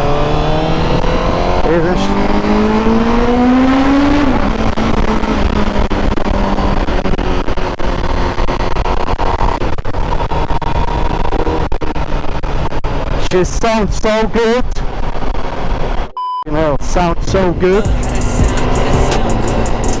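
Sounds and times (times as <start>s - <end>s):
motorcycle engine revving: 0.0s - 13.2s, 17.3s - 20.0s.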